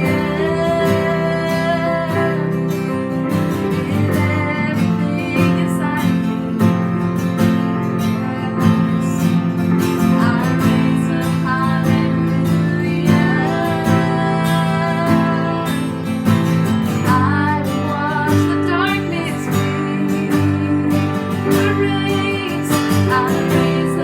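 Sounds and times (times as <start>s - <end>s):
worship band music: 0.0s - 4.8s
strummed acoustic guitar: 0.0s - 24.0s.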